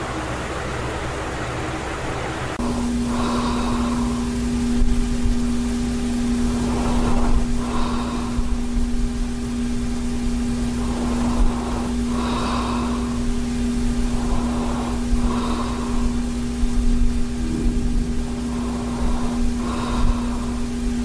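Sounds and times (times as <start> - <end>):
low electrical hum: 0.0 - 21.0
man breathing heavily: 2.6 - 5.5, 6.4 - 21.0.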